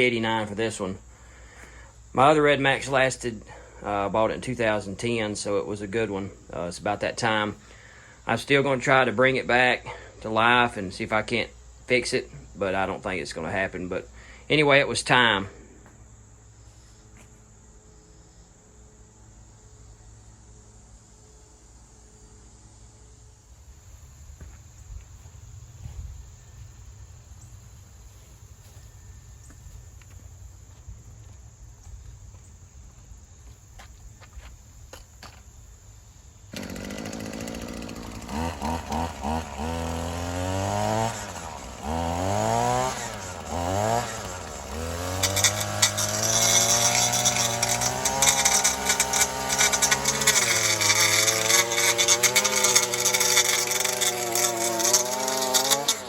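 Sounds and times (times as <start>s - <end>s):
small two-stroke engine revving: 36.5s - 56.0s.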